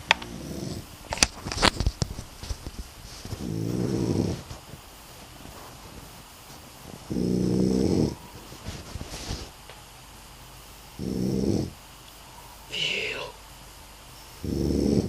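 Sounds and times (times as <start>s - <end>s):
man snoring loudly: 0.2s - 0.9s, 3.4s - 4.4s, 7.1s - 8.2s, 11.0s - 11.8s, 14.4s - 15.0s.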